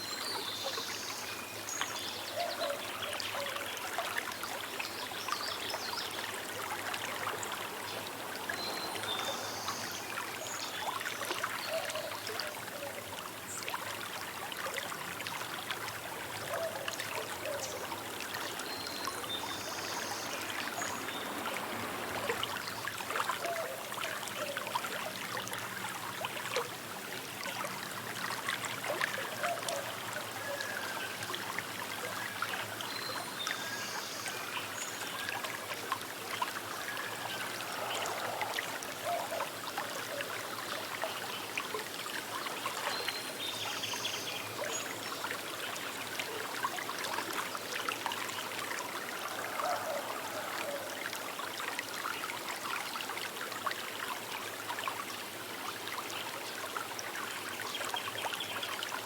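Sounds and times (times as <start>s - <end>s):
river babbling over stones: 3.7s - 59.0s.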